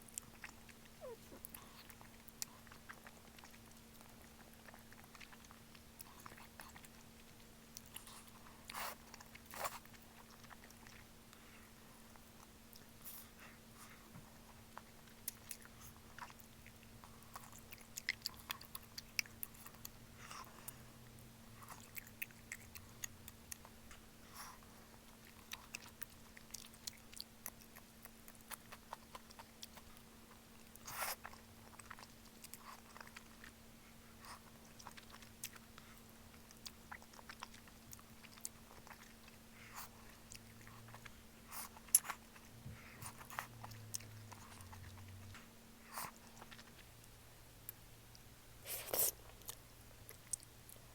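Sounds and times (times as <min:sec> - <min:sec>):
faint low hum: 0:00.0 - 0:50.9
person chewing and biting: 0:36.4 - 0:45.2.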